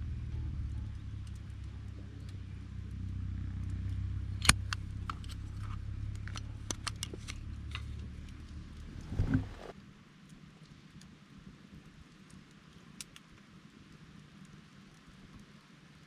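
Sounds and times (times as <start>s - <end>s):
steady low rumble: 0.0s - 10.3s
campfire wood crackling and popping: 0.0s - 16.0s.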